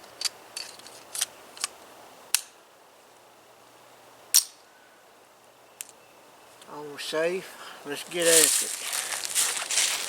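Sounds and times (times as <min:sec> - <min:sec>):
pistol metallic clicks: 0:01.1 - 0:02.6, 0:04.3 - 0:04.6.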